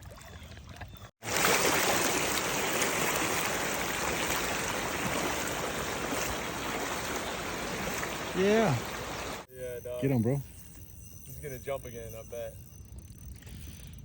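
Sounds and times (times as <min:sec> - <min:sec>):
creek water rushing: 0:01.2 - 0:09.5.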